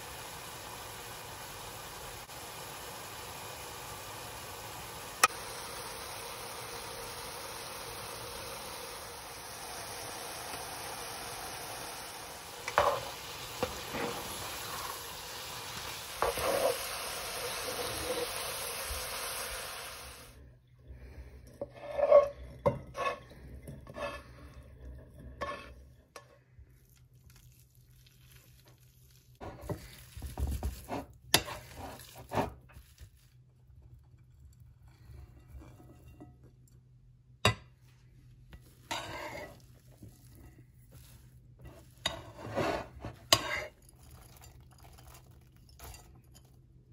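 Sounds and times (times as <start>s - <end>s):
food sizzling in a frying pan: 0.0s - 20.4s, 38.8s - 43.8s
utensil scraping a pan: 12.6s - 18.5s, 21.4s - 26.5s, 30.7s - 32.8s, 38.5s - 46.4s.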